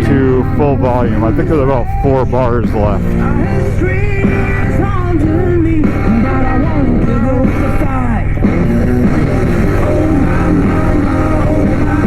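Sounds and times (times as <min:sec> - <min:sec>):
bluesy rock song with singing: 0:00.0 - 0:12.0
steady low rumble: 0:00.0 - 0:12.0.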